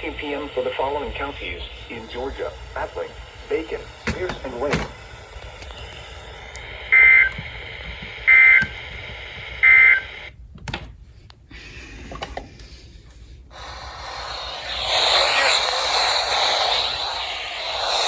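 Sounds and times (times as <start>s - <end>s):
faint radio hiss: 0.0s - 8.6s, 13.5s - 18.0s.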